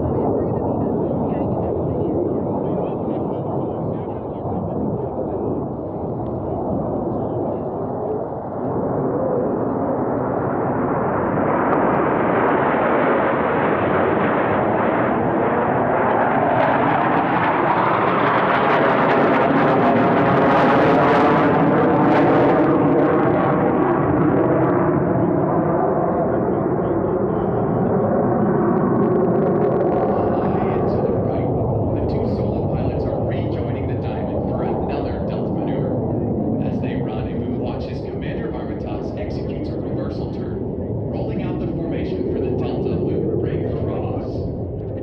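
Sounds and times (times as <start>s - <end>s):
jets flying past: 0.0s - 45.0s.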